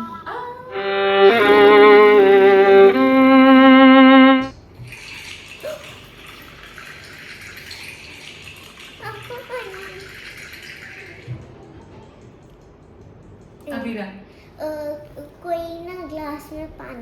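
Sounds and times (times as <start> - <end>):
bowed string notes with vibrato: 0.7 - 4.5
water poured into a glass: 4.8 - 11.3.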